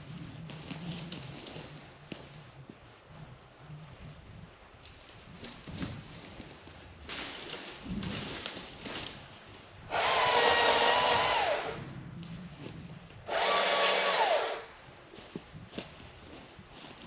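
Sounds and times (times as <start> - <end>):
battery chainsaw motor whine: 9.9 - 11.8, 13.3 - 14.7.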